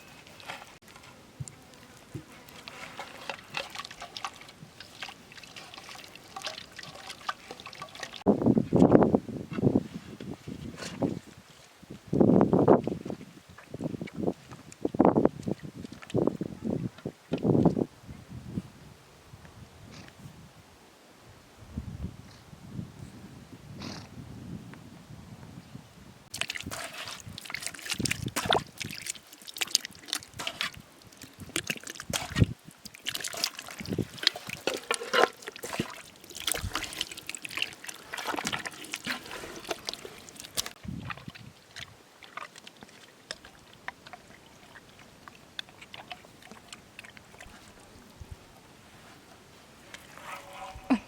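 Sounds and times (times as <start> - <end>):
water splashing and sloshing: 0.0 - 9.0, 26.3 - 51.0
faint water drips: 0.2 - 8.2, 26.3 - 48.2.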